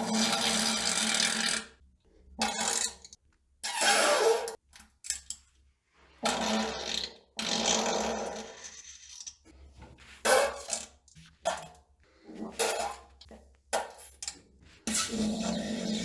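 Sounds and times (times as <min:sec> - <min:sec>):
raspy fart sounds: 0:06.2 - 0:08.7, 0:14.9 - 0:16.0.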